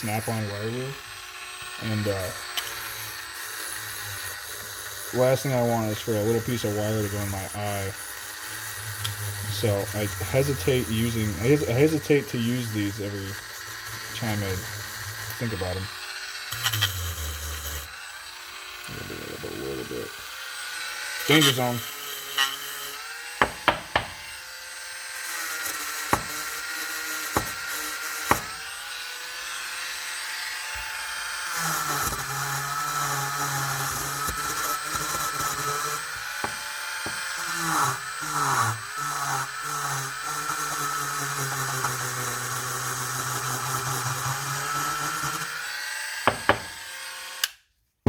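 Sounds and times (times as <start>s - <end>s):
power tool wire wheel whine: 0.0s - 47.6s
sharp taps: 23.4s - 24.2s, 46.3s - 46.7s.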